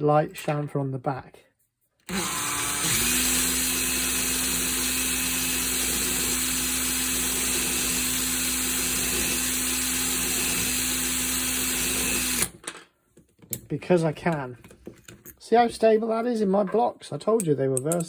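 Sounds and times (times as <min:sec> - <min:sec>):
power tool motor whining: 0:02.1 - 0:12.6.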